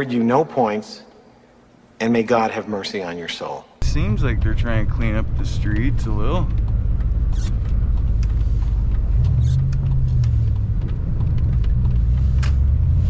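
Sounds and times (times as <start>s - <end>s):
truck engine and road rumble: 3.8s - 13.0s.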